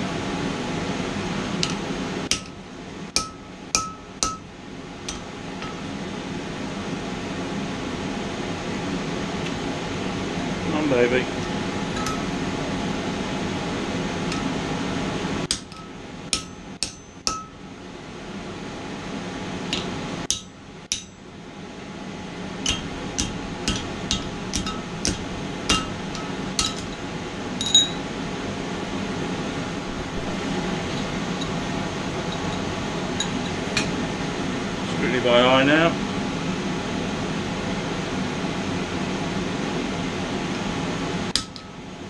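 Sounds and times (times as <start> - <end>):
hammer striking steel on anvil: 1.6 - 4.5, 5.1 - 5.9, 12.0 - 12.4, 14.3 - 14.5, 15.5 - 17.6, 19.7 - 21.2, 22.6 - 27.0, 27.6 - 28.1, 41.3 - 41.8.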